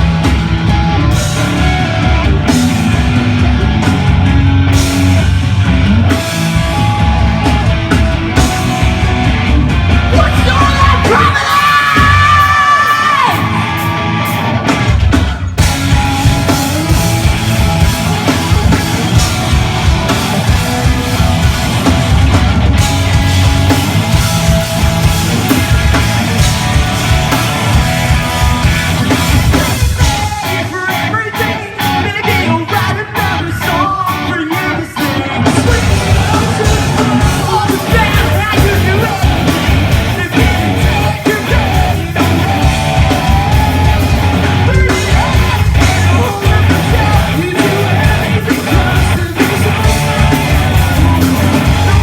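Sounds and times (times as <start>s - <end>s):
live rock band playing: 0.0s - 52.0s
person shouting singing: 8.4s - 14.3s, 26.3s - 52.0s.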